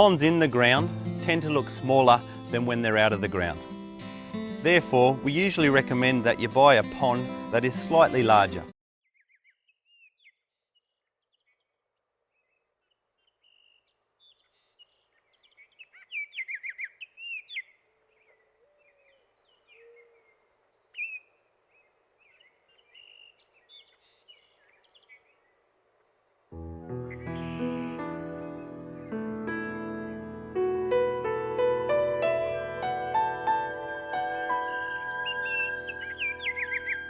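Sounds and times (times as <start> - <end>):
birds chirping and twittering: 9.0 - 29.2, 34.5 - 37.0.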